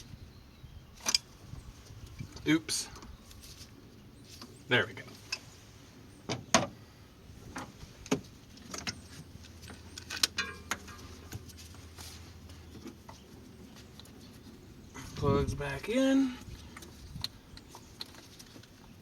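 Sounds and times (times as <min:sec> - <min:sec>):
hand tools clicking and clinking: 0:09.7 - 0:11.5.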